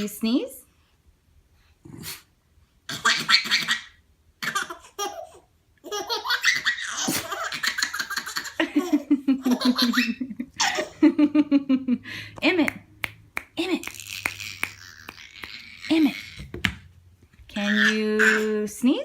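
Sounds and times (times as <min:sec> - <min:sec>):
small child laughing: 0:03.0 - 0:11.3, 0:13.9 - 0:16.4.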